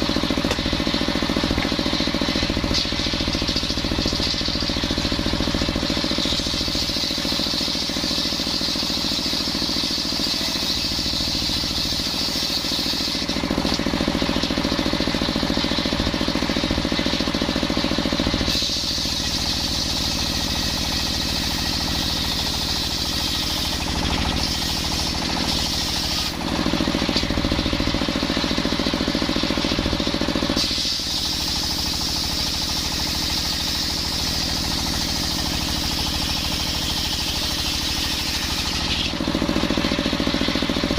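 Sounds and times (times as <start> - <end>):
circular sawmill running: 0.0 - 40.9
high saw cutting hiss: 18.4 - 26.4, 30.6 - 39.1.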